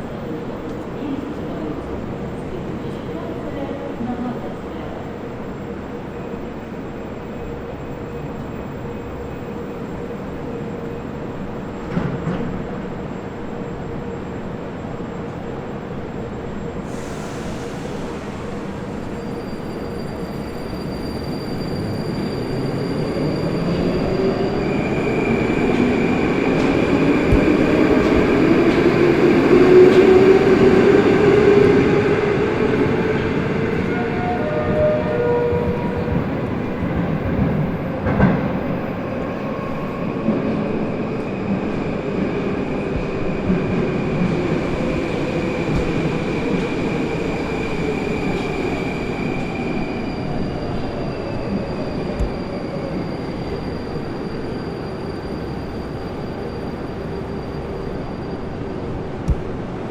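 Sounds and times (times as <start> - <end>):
train rumble: 21.8 - 59.9.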